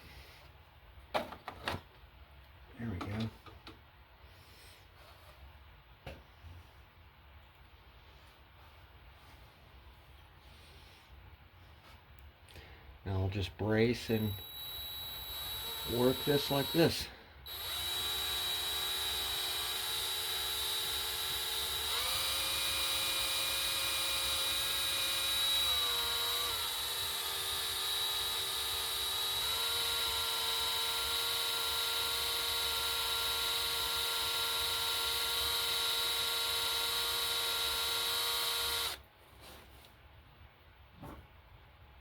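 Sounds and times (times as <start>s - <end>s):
electric drill motor whine: 14.2s - 39.0s.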